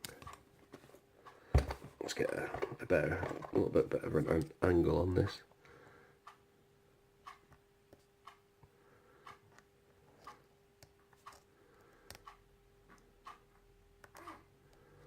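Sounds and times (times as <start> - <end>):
clock ticking: 7.2 - 7.5, 8.2 - 8.5, 9.2 - 9.5, 10.2 - 10.4, 12.1 - 13.7.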